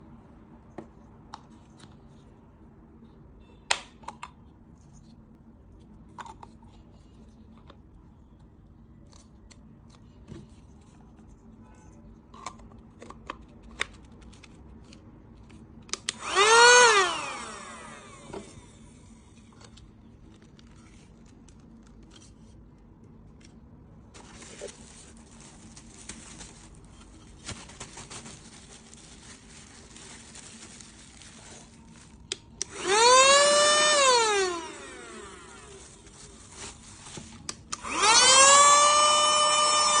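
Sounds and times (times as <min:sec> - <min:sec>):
vacuum cleaner motor whining: 0:16.1 - 0:18.8, 0:32.6 - 0:36.0, 0:37.8 - 0:40.0.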